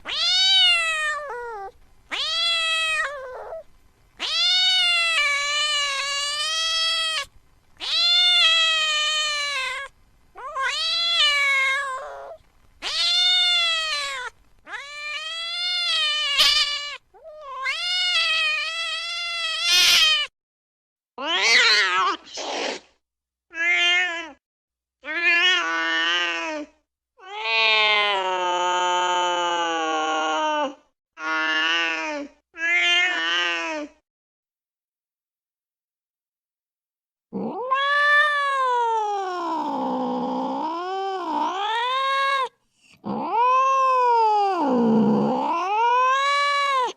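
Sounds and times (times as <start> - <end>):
cat meowing: 0.0 - 20.3, 21.2 - 22.4, 23.5 - 24.4, 31.2 - 33.9, 37.4 - 46.9.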